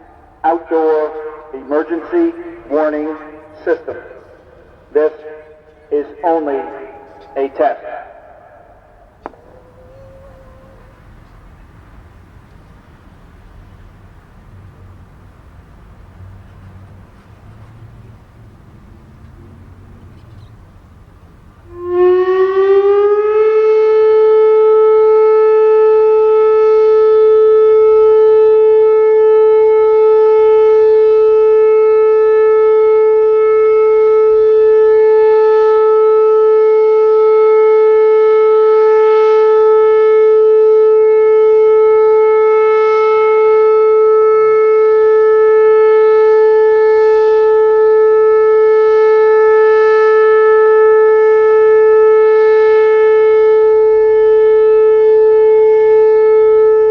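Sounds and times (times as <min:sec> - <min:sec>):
electronic warning siren: 0:06.0 - 0:11.1, 0:21.7 - 0:56.9.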